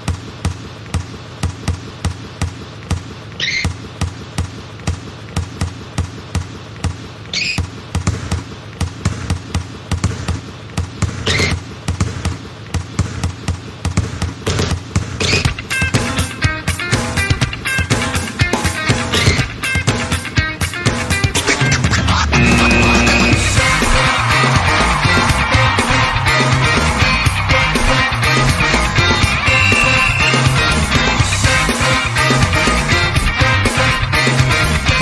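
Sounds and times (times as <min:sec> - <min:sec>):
ball bouncing: 0:00.0 - 0:16.1, 0:23.4 - 0:31.3.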